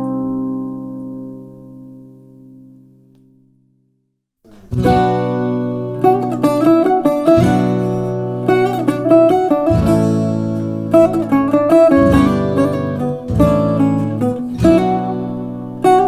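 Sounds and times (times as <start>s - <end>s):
acoustic guitar chords: 0.0s - 3.5s, 4.5s - 16.0s
bouzouki picking a quick melody: 4.5s - 16.0s.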